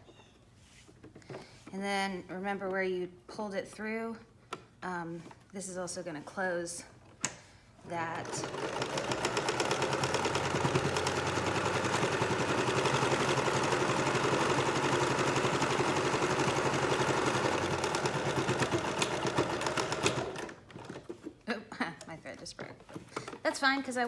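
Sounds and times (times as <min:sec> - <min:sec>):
sewing machine stitching: 0:08.0 - 0:21.3.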